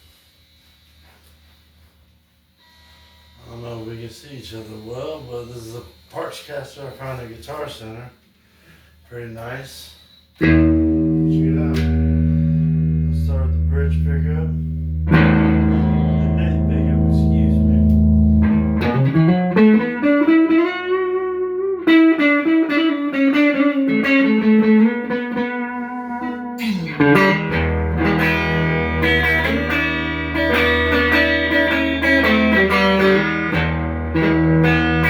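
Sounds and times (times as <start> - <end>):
electric guitar playing: 10.4 - 35.0.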